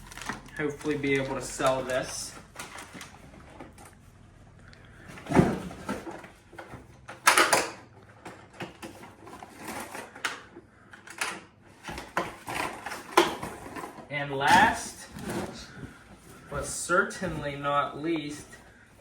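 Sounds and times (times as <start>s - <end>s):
packaging rustling: 0.0s - 4.1s.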